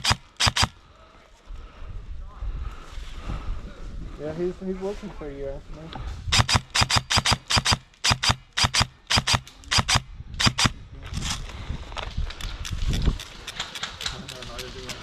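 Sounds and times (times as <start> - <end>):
airsoft gun firing: 0.0 - 0.7, 6.3 - 10.7.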